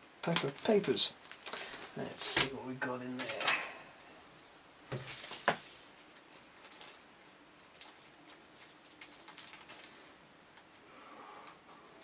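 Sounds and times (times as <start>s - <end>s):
paper rustling: 5.0s - 7.0s.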